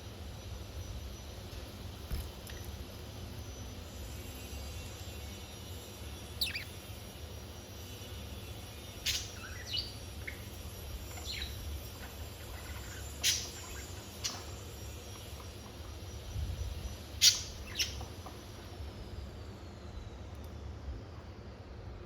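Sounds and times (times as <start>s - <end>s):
steady low hum: 0.0s - 22.0s
budgerigars chirping: 6.4s - 6.8s, 11.1s - 14.4s.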